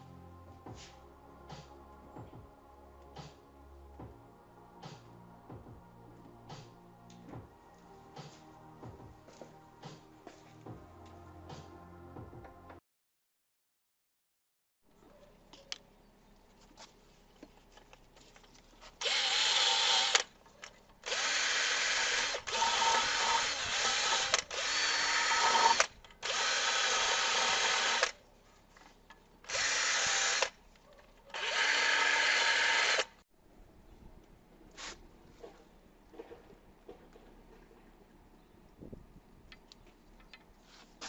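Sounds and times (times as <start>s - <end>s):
power tool whirring: 19.0s - 20.3s, 21.0s - 28.2s, 29.5s - 30.6s, 31.4s - 33.2s.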